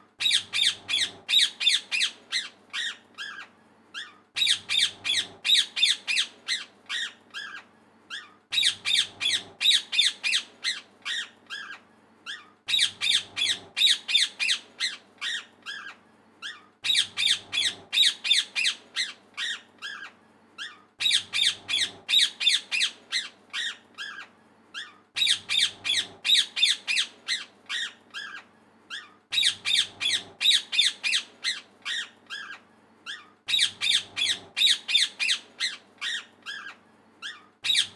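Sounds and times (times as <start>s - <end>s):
parrot chirping: 0.2s - 37.9s.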